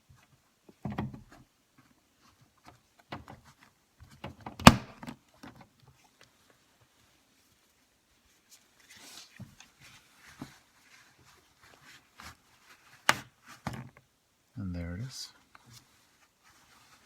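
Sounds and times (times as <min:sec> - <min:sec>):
sharp plastic snap: 0:04.6 - 0:05.0.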